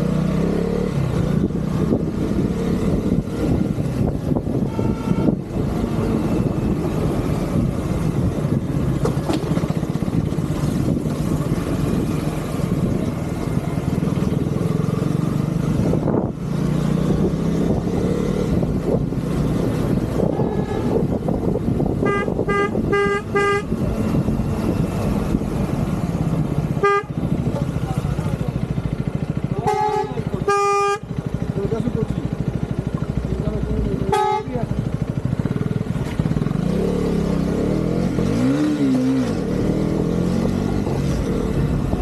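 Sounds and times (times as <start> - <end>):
motorcycle engine running: 0.0 - 42.0
wind noise: 1.3 - 13.2, 15.7 - 27.6
horn beeps: 4.6 - 5.5, 22.0 - 23.8, 26.8 - 27.2, 29.6 - 31.1.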